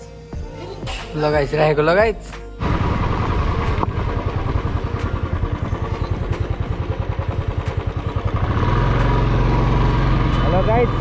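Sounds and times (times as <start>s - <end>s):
motorcycle engine thumping: 2.6s - 9.2s.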